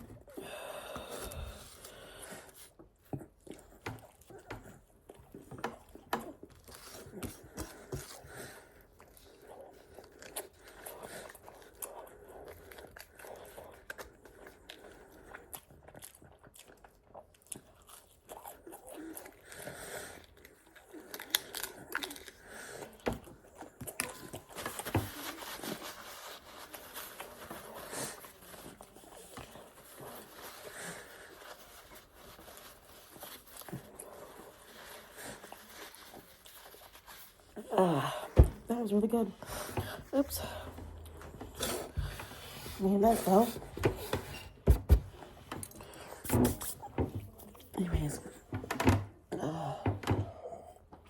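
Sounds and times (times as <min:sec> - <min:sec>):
chewing pizza crust: 0:00.0 - 0:38.4, 0:39.0 - 0:48.5.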